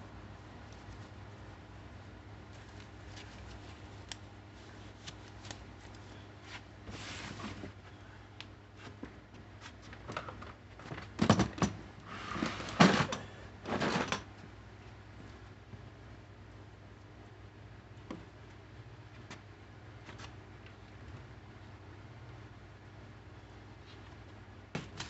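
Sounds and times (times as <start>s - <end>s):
rustling and small knocks: 2.4s - 7.9s.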